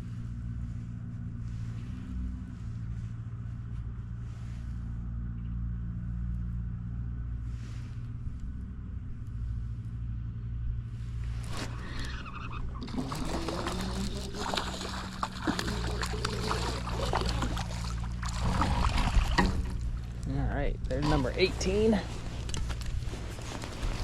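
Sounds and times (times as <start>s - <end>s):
low motor drone: 0.0s - 24.0s
splashing and rustling: 11.1s - 24.0s.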